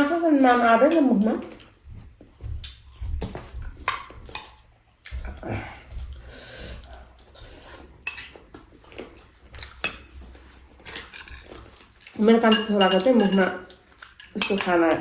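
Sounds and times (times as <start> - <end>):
cutlery and dishes clinking: 3.8 - 4.6, 8.0 - 8.5, 10.8 - 15.0.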